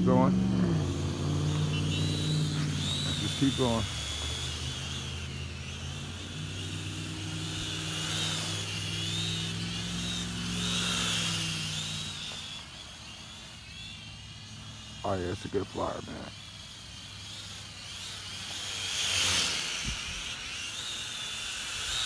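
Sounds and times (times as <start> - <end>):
low hum: 0.0 - 17.6
toy drone motors whining: 0.0 - 22.0.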